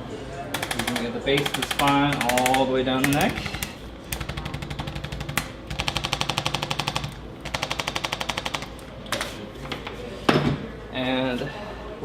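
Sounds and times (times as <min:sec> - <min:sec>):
adjusting instrument rapid tapping: 0:00.6 - 0:08.7.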